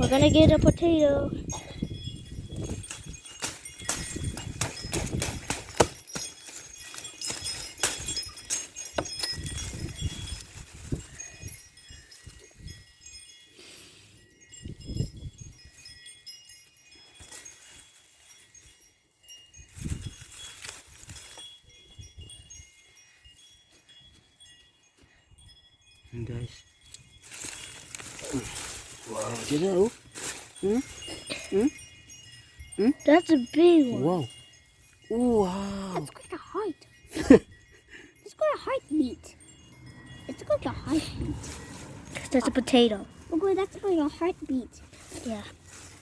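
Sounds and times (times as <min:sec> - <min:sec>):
wind chimes ringing: 0:00.0 - 0:46.0
rustling: 0:02.5 - 0:14.0, 0:15.7 - 0:24.7, 0:26.9 - 0:32.7, 0:40.1 - 0:46.0.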